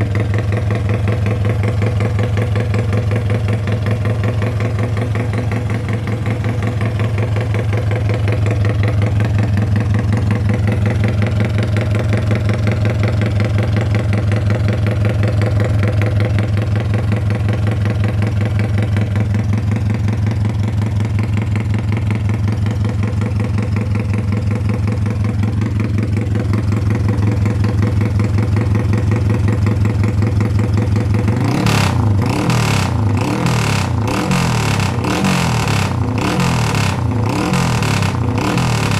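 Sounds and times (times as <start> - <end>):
motorcycle engine idling: 0.0 - 38.9
motorcycle throttle blips: 22.5 - 38.9.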